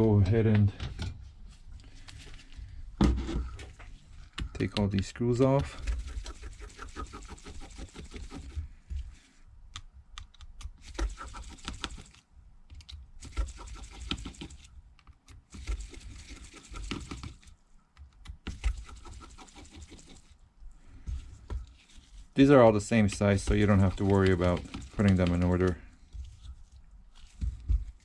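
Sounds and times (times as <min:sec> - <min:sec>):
screwdriver clicks and taps: 0:09.7 - 0:10.8.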